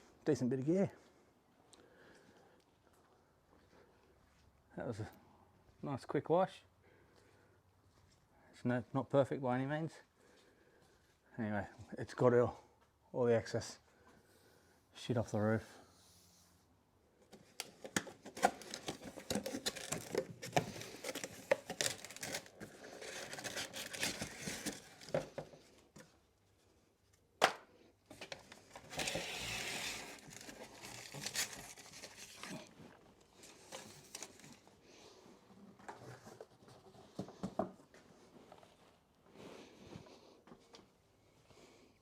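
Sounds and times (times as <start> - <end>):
material crinkling and rustling: 17.3 - 26.0, 28.1 - 37.4
rasping tear: 28.8 - 32.7.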